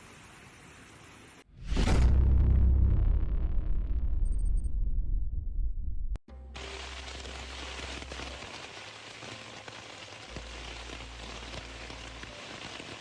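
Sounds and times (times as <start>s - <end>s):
low hum: 1.5s - 7.1s
heavy rain on hard surfaces: 6.4s - 13.0s.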